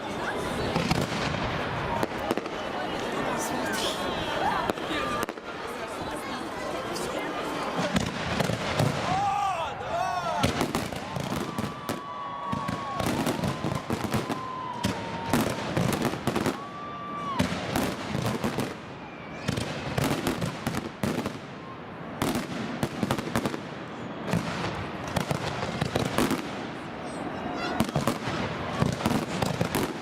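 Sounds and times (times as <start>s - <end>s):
fireworks bangs and crackles: 0.0s - 9.6s, 10.2s - 30.0s
fireworks whistles: 10.4s - 20.4s.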